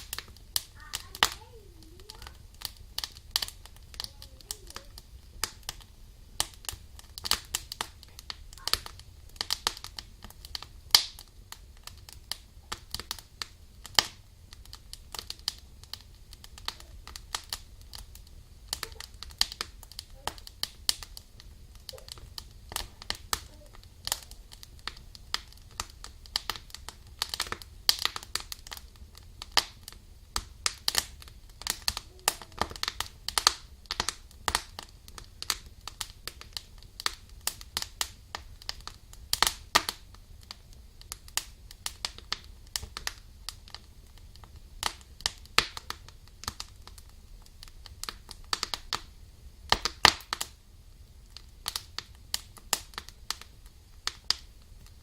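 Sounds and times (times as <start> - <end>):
logs crackling in fireplace: 0.0 - 55.0.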